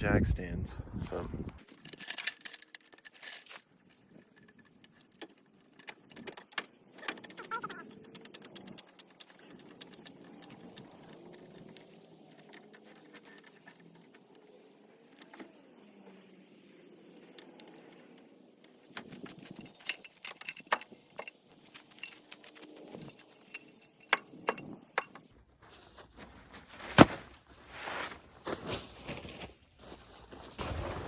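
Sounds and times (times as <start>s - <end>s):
metal clinks and clanks: 1.6s - 14.4s, 19.0s - 25.2s.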